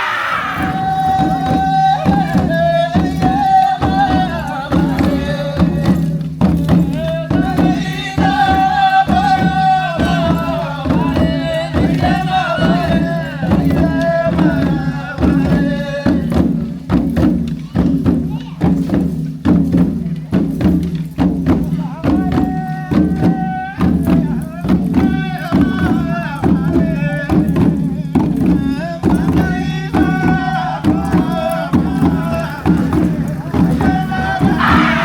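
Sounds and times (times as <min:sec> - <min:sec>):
person singing: 0:00.0 - 0:06.1, 0:29.0 - 0:35.0
steady drumbeat: 0:00.0 - 0:35.0.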